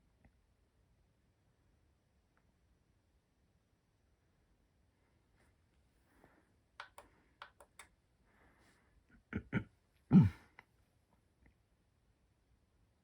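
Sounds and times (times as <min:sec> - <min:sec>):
light clicks: 0:06.8 - 0:07.9.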